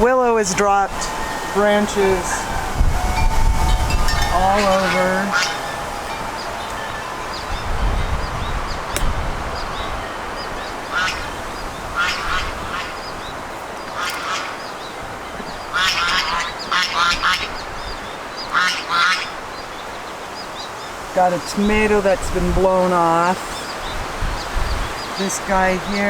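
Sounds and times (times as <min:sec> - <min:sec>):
wind rumble on microphone: 0:00.0 - 0:26.0
ducks quacking: 0:04.2 - 0:07.4, 0:10.9 - 0:13.1.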